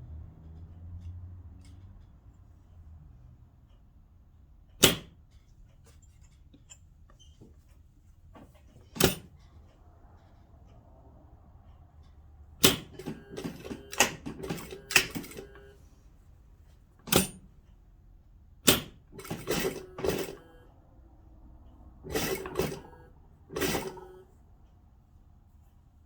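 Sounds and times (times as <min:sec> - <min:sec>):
sewing machine stitching: 0:08.5 - 0:09.3, 0:12.6 - 0:15.8, 0:17.1 - 0:17.5, 0:18.7 - 0:20.7, 0:22.0 - 0:24.3.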